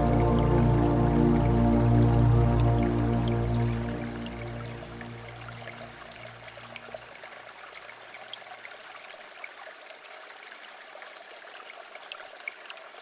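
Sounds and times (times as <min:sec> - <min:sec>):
low held music tone: 0:00.0 - 0:06.8
stream water trickling: 0:00.0 - 0:13.0.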